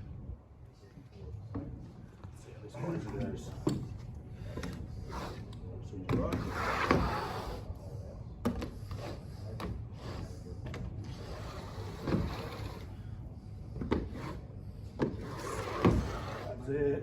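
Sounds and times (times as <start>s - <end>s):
tool scraping plaster corner: 4.5s - 7.7s, 8.5s - 13.0s, 13.8s - 16.7s.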